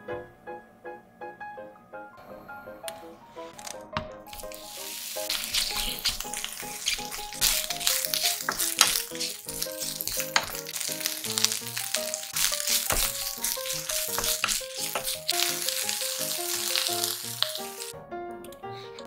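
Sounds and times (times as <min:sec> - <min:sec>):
plucked background music: 0:01.7 - 0:19.0
food sizzling in frying pan: 0:04.3 - 0:17.9.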